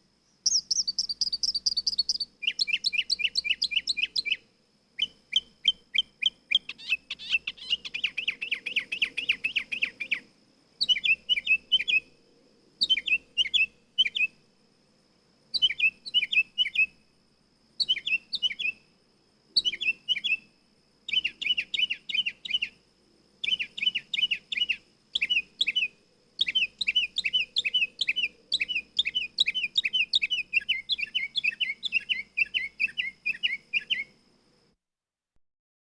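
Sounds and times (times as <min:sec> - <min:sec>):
mockingbird chirping: 0:00.3 - 0:04.4, 0:05.0 - 0:12.1, 0:12.8 - 0:14.4, 0:15.6 - 0:17.0, 0:17.8 - 0:18.8, 0:19.6 - 0:20.4, 0:21.1 - 0:22.8, 0:23.4 - 0:34.1.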